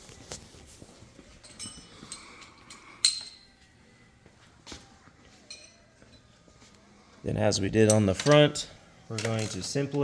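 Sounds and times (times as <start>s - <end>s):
small metal parts clinking: 1.4s - 3.6s, 7.9s - 10.0s
ringing metal clink: 1.4s - 3.7s, 5.5s - 6.2s.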